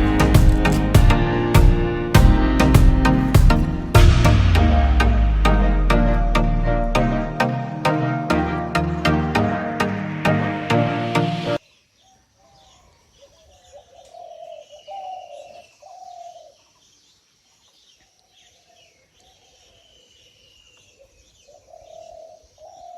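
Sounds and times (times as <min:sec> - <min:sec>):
background music: 0:00.0 - 0:11.6
small birds chirping: 0:11.6 - 0:22.9
doves cooing: 0:12.4 - 0:16.6, 0:21.0 - 0:22.9.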